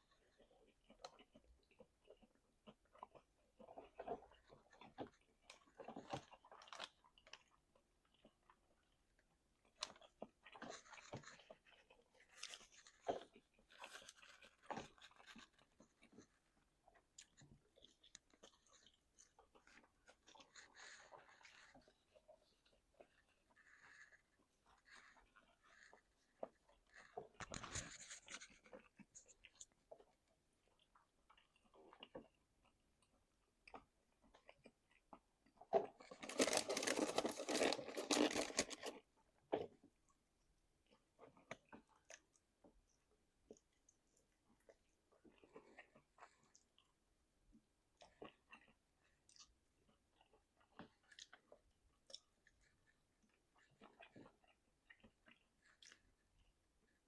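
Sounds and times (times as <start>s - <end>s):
chewing and crunching: 0.0s - 57.0s.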